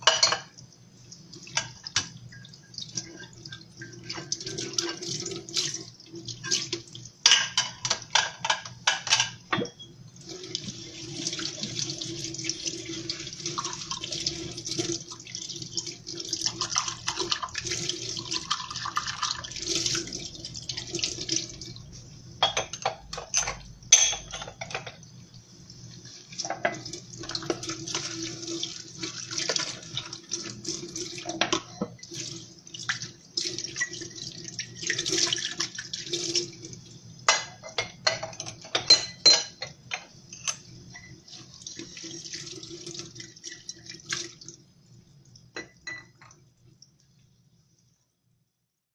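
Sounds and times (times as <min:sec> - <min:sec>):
dishes clinking and clattering: 0:00.0 - 0:00.6, 0:01.5 - 0:02.4, 0:03.0 - 0:05.3, 0:06.4 - 0:09.9, 0:22.4 - 0:25.0, 0:26.4 - 0:28.4, 0:31.2 - 0:32.1, 0:33.7 - 0:34.1, 0:37.3 - 0:41.5, 0:45.5 - 0:46.4
tap water running and splashing: 0:00.0 - 0:09.4, 0:10.1 - 0:23.7, 0:24.4 - 0:47.2.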